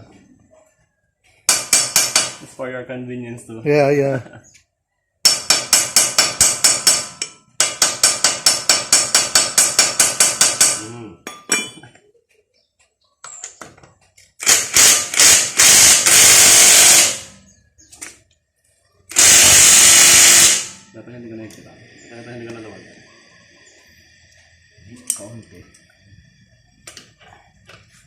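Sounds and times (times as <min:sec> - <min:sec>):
impact wrench rattling: 0:01.5 - 0:02.5, 0:14.4 - 0:17.3, 0:19.1 - 0:20.8.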